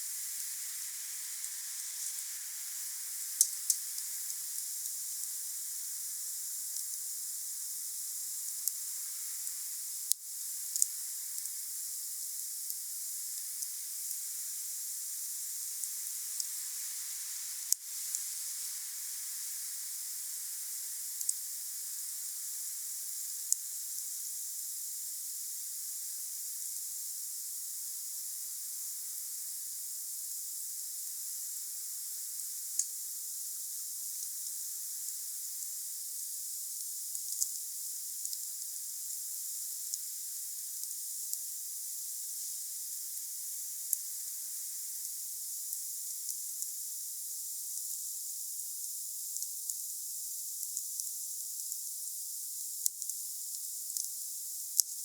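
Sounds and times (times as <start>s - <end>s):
wood fire hissing: 0.0s - 6.2s.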